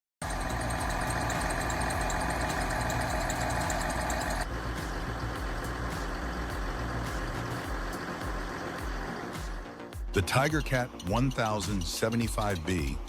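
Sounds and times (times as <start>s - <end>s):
high-pitched machine noise: 0.2s - 9.8s
heavy machine engine running: 0.2s - 9.9s.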